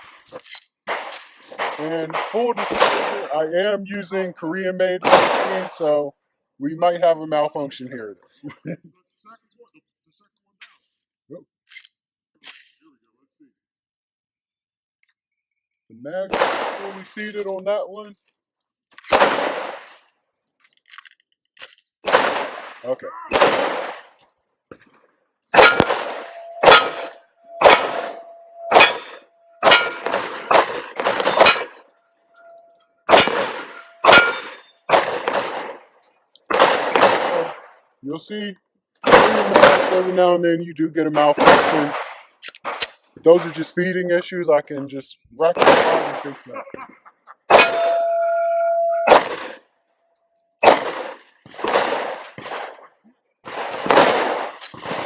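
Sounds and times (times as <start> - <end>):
pistol shots with ringing tail: 0.9 - 4.3, 5.0 - 6.0, 16.3 - 17.4, 19.1 - 20.0, 22.0 - 24.2, 25.5 - 37.9, 39.0 - 40.3, 41.3 - 42.9, 45.6 - 46.3, 47.5 - 49.6, 50.4 - 52.9, 53.5 - 55.0
steel target plate ringing: 25.6 - 31.8, 32.4 - 34.9, 47.5 - 49.3.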